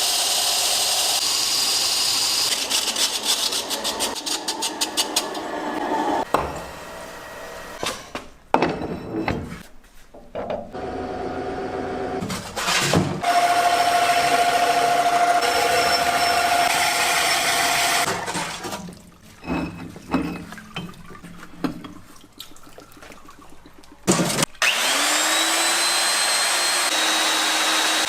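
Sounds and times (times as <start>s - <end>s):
power tool whining: 10.8s - 18.1s, 24.6s - 28.0s.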